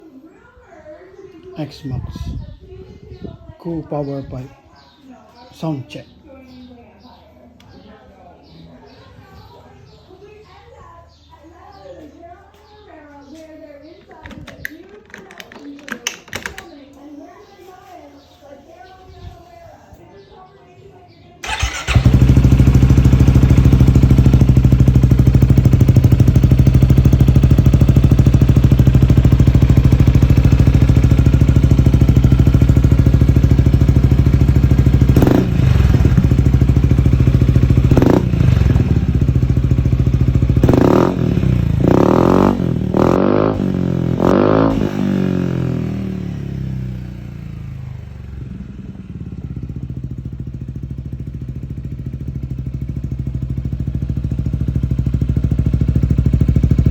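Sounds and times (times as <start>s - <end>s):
scooter engine idling and revving: 21.4s - 56.9s.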